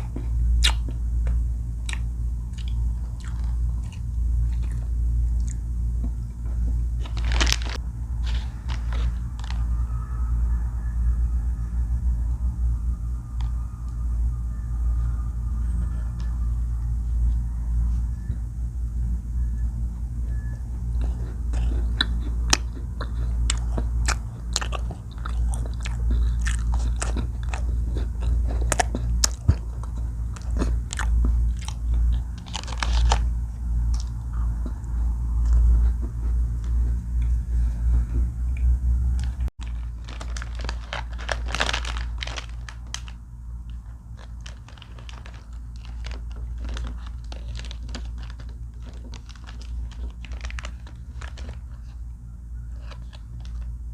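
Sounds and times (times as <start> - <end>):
crunchy biscuit chewing: 0.0 - 9.9, 20.3 - 38.2, 39.2 - 53.8.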